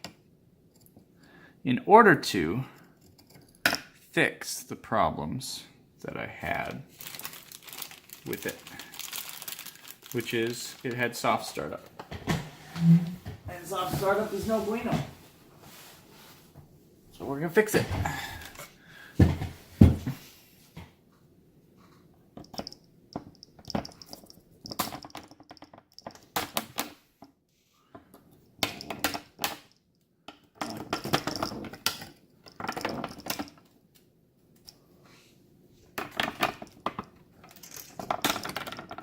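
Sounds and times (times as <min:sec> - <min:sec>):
small hard parts clattering: 0:06.5 - 0:12.4, 0:22.4 - 0:26.9, 0:28.0 - 0:33.8, 0:36.0 - 0:39.0.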